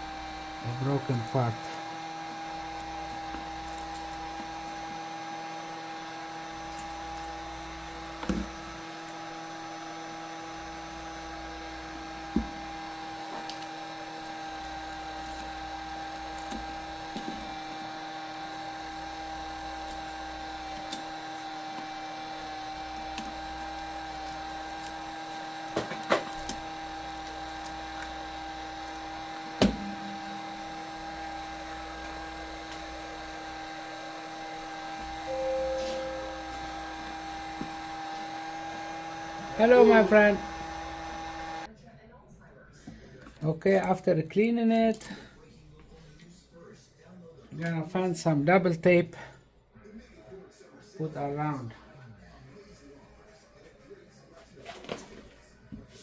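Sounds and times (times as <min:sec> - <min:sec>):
electrical hum: 0:22.2 - 0:41.7.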